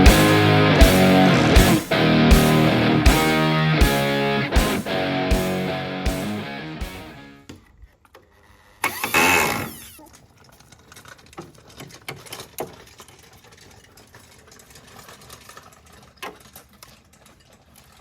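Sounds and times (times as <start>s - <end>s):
small power tool running: 8.8s - 10.0s.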